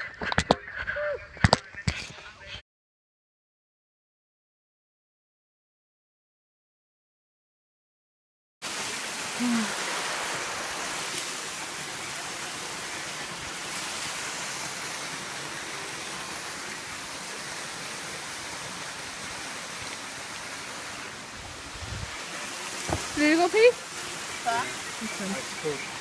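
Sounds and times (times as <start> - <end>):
steady rushing noise: 20.4 - 26.0.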